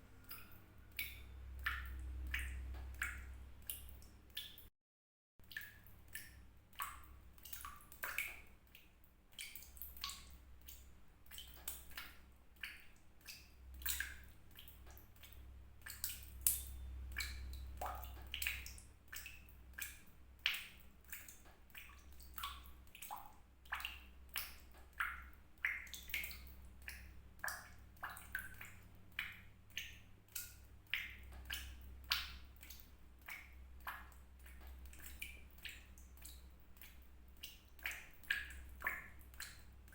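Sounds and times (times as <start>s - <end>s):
water drops plinking into water: 0.2s - 4.7s, 5.4s - 39.9s.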